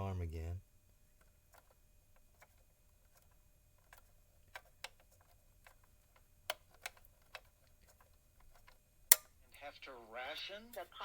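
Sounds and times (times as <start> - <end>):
clock radio knobs and switches clicking: 1.5 - 9.6.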